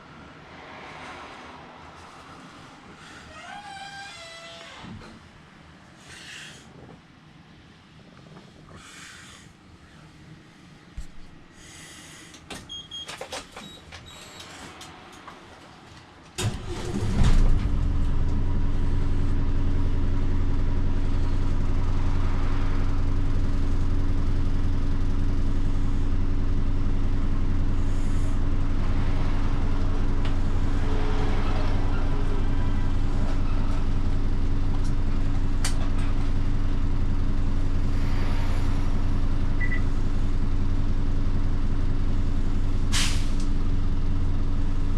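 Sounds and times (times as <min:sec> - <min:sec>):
diesel engine starting and idling: 0:16.4 - 0:44.9.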